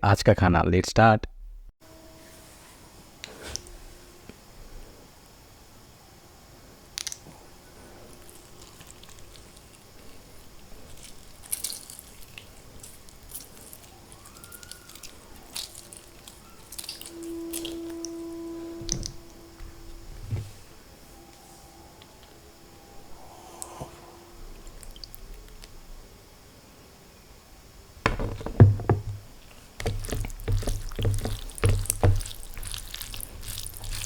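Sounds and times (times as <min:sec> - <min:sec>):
steady hum: 0:01.2 - 0:14.4, 0:15.0 - 0:34.0
wet eating sounds: 0:08.0 - 0:18.0, 0:29.8 - 0:34.0.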